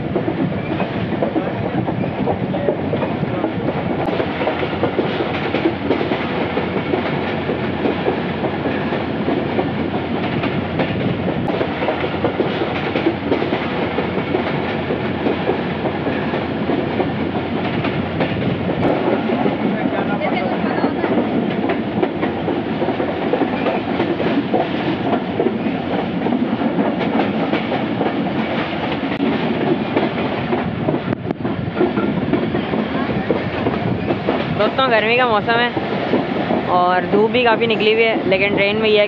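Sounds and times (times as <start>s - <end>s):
rail joint clacks: 0.0s - 39.0s
train wheels rumbling on track: 0.0s - 39.0s.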